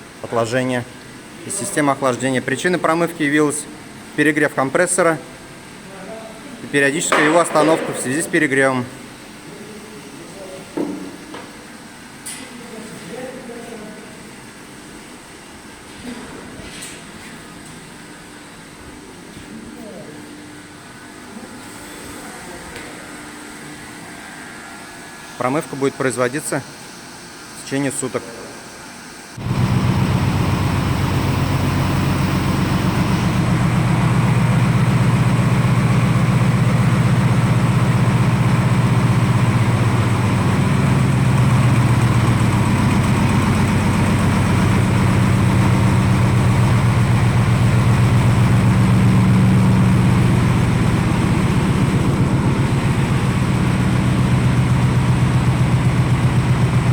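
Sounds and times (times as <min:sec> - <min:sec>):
air compressor running: 0:06.8 - 0:09.4, 0:29.1 - 0:56.9.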